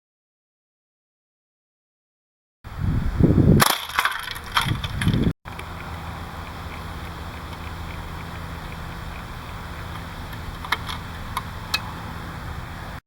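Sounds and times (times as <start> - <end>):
rumbling handling noise: 3.5 - 13.0
airsoft gun shots cracking: 3.6 - 4.1
steady low hum: 4.4 - 13.0.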